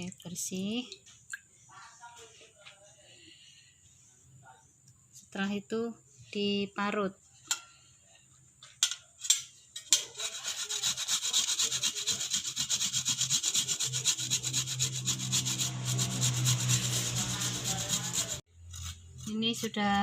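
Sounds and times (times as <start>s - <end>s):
root grated on grater: 9.9s - 19.8s.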